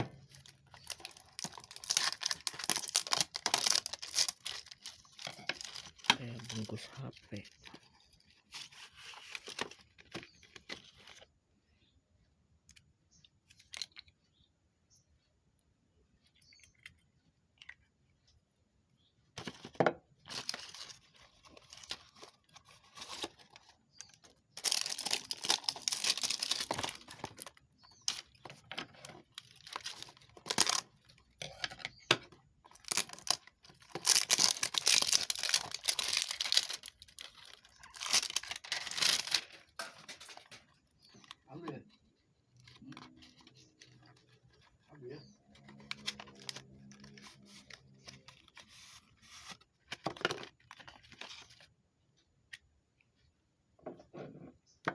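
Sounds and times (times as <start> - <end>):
packaging tearing and crinkling: 0.3 - 7.6, 20.3 - 31.2, 32.7 - 41.4, 45.6 - 51.5.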